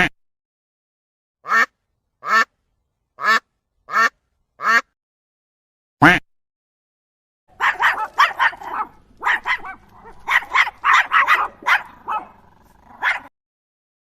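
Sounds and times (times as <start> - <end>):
dog barking: 7.5 - 13.3.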